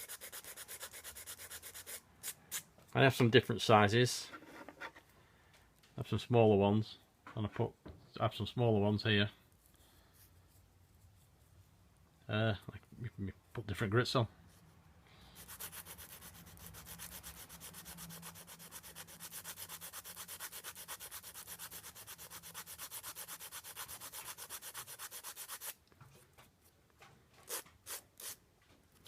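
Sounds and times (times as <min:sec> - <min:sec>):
sandpaper sanding wood: 0:00.0 - 0:02.6, 0:15.4 - 0:25.8, 0:27.5 - 0:28.4.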